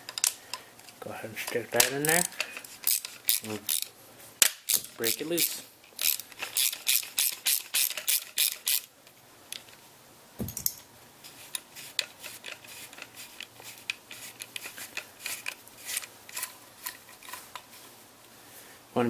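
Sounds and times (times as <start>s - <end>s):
small metal parts clicking and rubbing: 0.0s - 3.9s, 4.5s - 8.9s, 10.6s - 17.8s
socket ratchet clicking: 2.0s - 8.9s.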